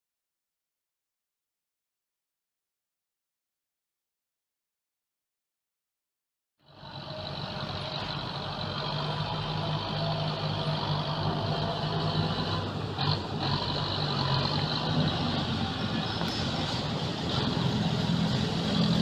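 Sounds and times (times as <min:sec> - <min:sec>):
heavy vehicle engine running: 0:06.6 - 0:19.0.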